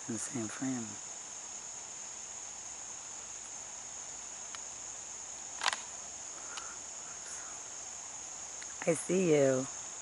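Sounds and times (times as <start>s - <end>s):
insect chorus trilling: 0.0s - 10.0s
faint ticks: 4.5s - 4.7s, 5.4s - 6.8s, 8.6s - 8.8s
sharp click: 5.6s - 5.9s.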